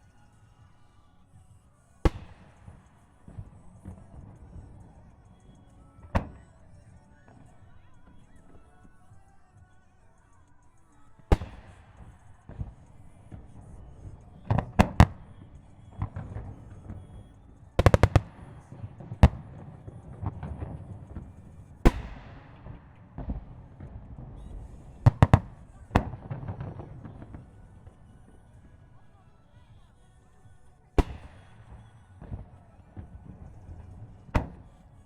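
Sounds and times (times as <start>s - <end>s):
firework shells bursting: 2.1s - 4.9s, 11.2s - 28.0s, 31.0s - 34.8s.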